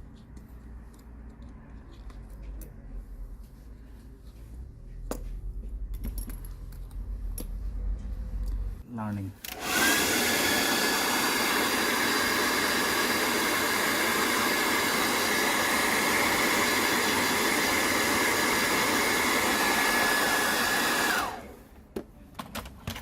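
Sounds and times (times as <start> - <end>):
heat gun blowing with fan whine: 9.4 - 21.6.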